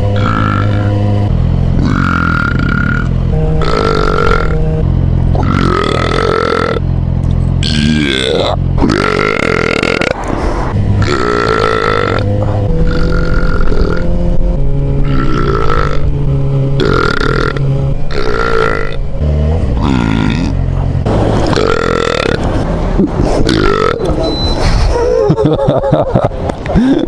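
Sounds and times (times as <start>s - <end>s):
man belching: 0.0s - 1.1s, 1.7s - 4.6s, 5.3s - 6.8s, 7.6s - 10.3s, 11.0s - 14.1s, 15.0s - 16.1s, 16.8s - 19.0s, 19.8s - 20.6s, 21.5s - 22.4s, 23.0s - 24.2s.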